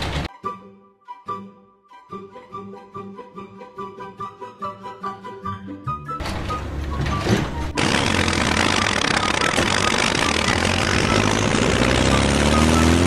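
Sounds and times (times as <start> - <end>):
engine running steadily: 6.3 - 13.0.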